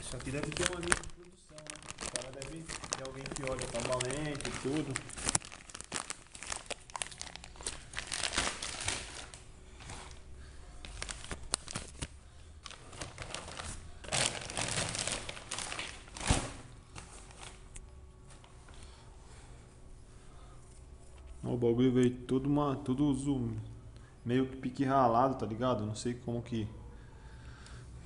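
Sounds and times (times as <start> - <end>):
packaging wrap crinkling and tearing: 0.0 - 10.2, 10.8 - 17.8.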